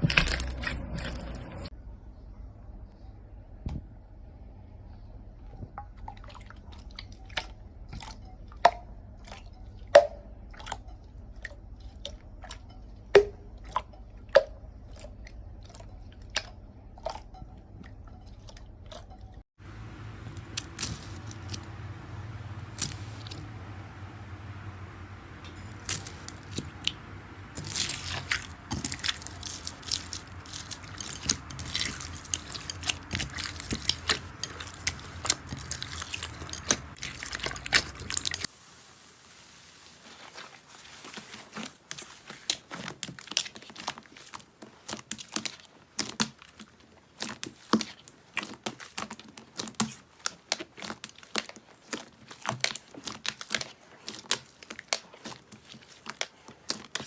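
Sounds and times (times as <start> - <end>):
slime crackling and popping: 20.0 - 38.5, 40.0 - 57.0.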